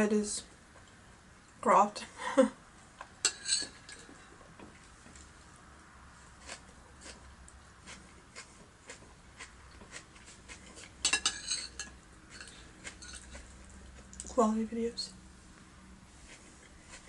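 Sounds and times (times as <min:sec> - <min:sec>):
cutlery clinking against a plate: 0:03.2 - 0:04.2, 0:10.7 - 0:13.5.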